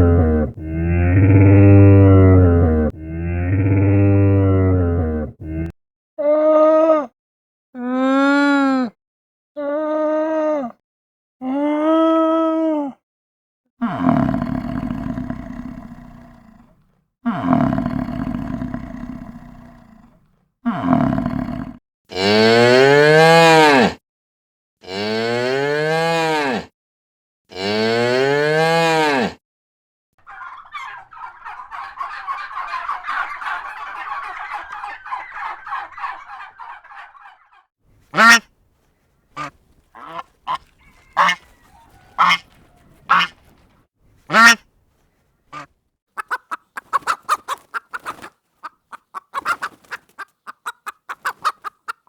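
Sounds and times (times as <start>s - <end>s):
cow mooing: 0.0s - 5.7s
goose honking: 30.2s - 38.5s, 39.4s - 43.7s, 44.3s - 44.6s, 45.5s - 52.0s
clucking calls: 30.2s - 44.6s, 45.5s - 52.0s.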